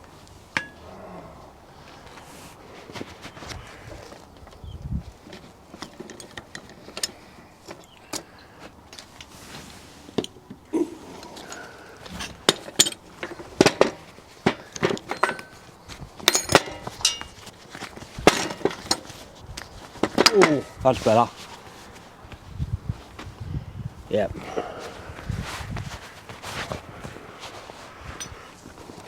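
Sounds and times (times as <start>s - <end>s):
metal clinks and knocks: 0.6s - 0.8s, 11.2s - 19.1s, 28.1s - 28.6s.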